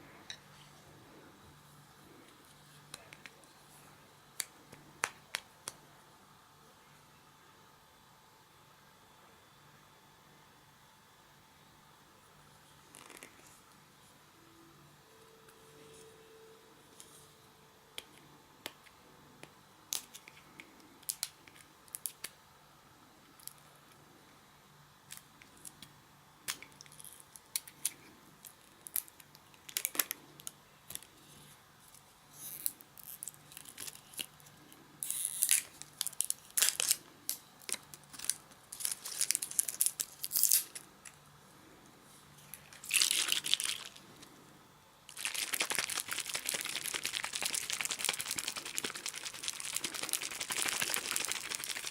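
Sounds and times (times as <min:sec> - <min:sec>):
slime popping and crackling: 0:45.1 - 0:51.9.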